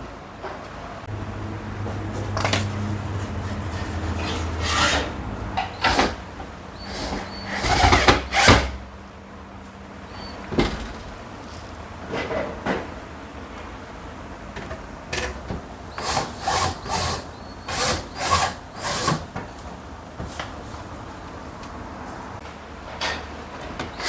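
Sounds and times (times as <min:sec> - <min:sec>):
tools scraping and knocking: 0:01.8 - 0:06.2, 0:06.9 - 0:08.8.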